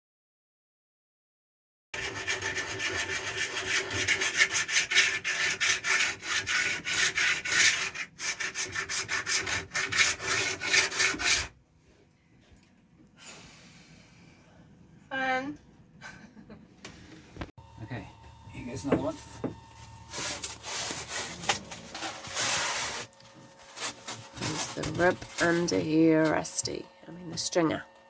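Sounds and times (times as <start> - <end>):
tool scraping back and forth: 2.0 - 11.6, 17.6 - 28.0.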